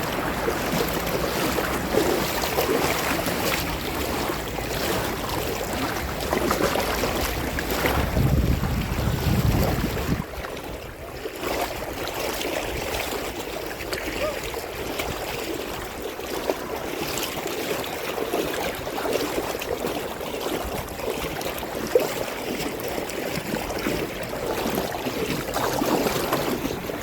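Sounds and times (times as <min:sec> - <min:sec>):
wind on microphone: 0:00.0 - 0:16.1
sea water lapping: 0:00.0 - 0:27.0.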